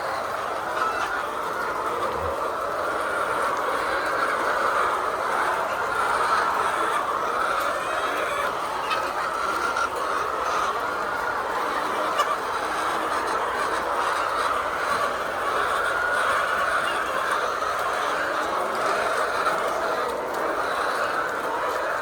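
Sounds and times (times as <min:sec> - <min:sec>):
hens clucking: 0:00.0 - 0:22.0.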